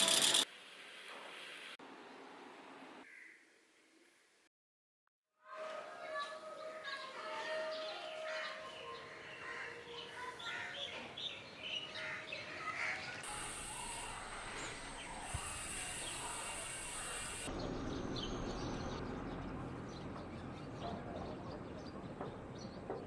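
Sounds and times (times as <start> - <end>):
birds chirping: 6.6 - 23.0
steady hiss: 13.2 - 17.5.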